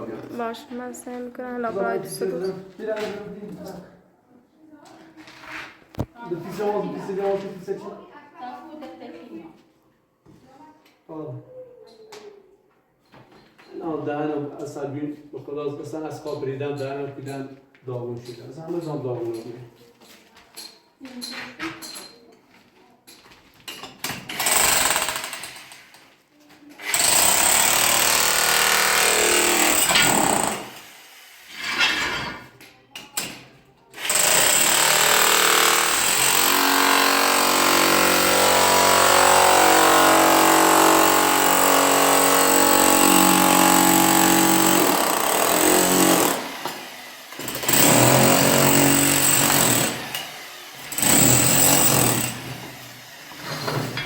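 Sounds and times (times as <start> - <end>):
electric power tool running: 34.0 - 53.3.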